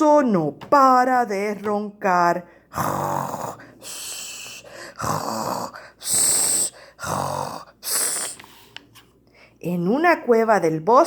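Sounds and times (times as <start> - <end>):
woman imitating snoring: 2.8 - 4.4, 5.0 - 8.4
long hissing breath: 5.7 - 8.7.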